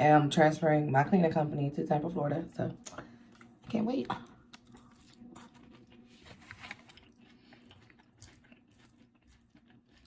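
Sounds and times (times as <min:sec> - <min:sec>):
chewing food: 0:02.8 - 0:10.0.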